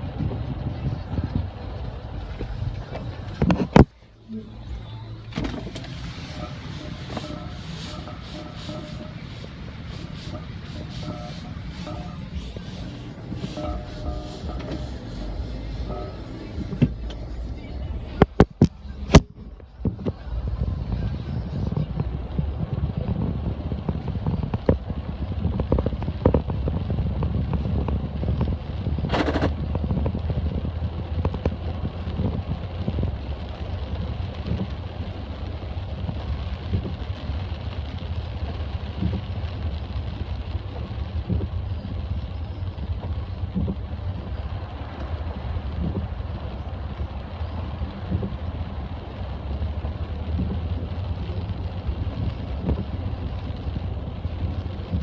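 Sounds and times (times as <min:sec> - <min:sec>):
vehicle engine rumbling: 0:00.0 - 0:55.0
brief rasping noise: 0:05.3 - 0:18.3.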